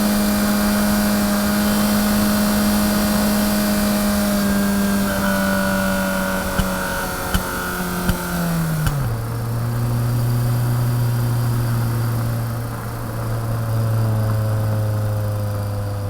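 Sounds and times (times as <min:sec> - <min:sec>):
motorcycle engine running: 0:00.0 - 0:16.0
sharp clicks: 0:06.4 - 0:09.2.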